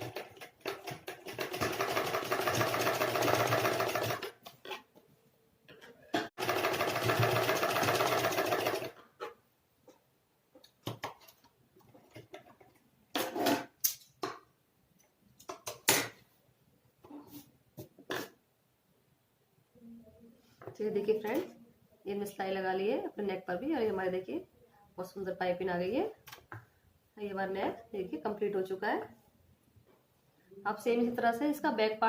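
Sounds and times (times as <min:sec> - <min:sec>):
sewing machine stitching: 0:00.0 - 0:04.4, 0:06.4 - 0:09.0.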